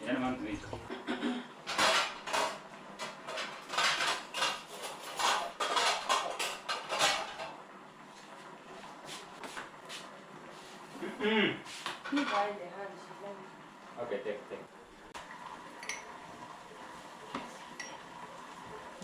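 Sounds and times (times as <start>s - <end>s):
cutlery and dishes clinking: 1.7s - 7.6s, 15.8s - 16.1s, 17.8s - 18.1s.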